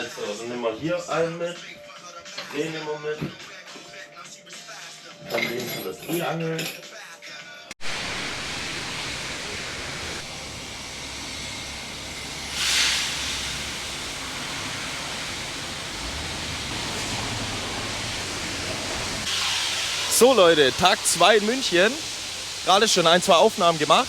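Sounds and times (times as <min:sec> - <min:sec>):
steady rushing noise: 0:07.8 - 0:12.6.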